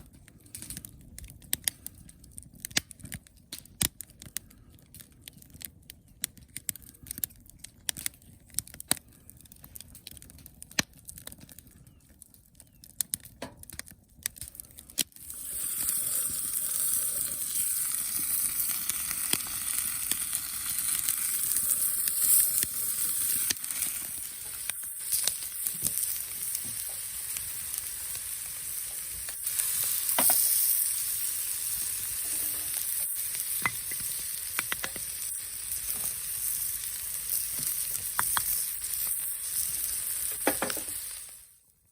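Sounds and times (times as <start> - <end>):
small clicks and taps: 0.1 - 15.1, 33.6 - 35.1, 37.6 - 38.5
food sizzling in hot oil: 15.1 - 41.6.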